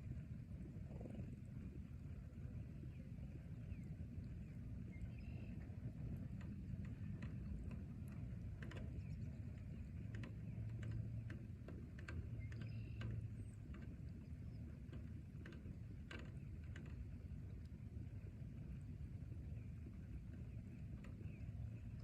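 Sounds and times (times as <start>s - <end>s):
low steady rumble: 0.0s - 22.0s
faint bird chirp: 2.7s - 6.2s, 12.2s - 14.8s, 20.4s - 22.0s
raindrops ticking: 5.6s - 22.0s.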